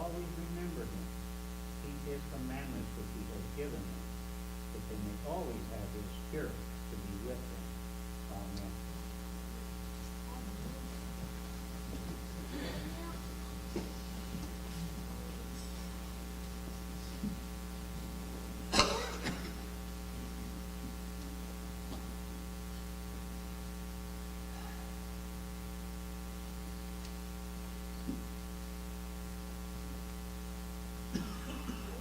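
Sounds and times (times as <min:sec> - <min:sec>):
electrical mains hum: 0:00.0 - 0:32.0
faint ticks: 0:27.0 - 0:27.2.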